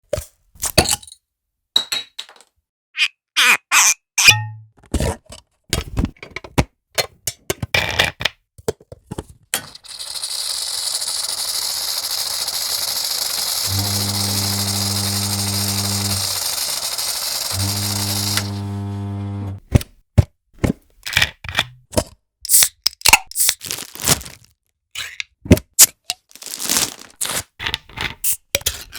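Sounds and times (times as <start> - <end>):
low buzz: 13.6 - 19.6.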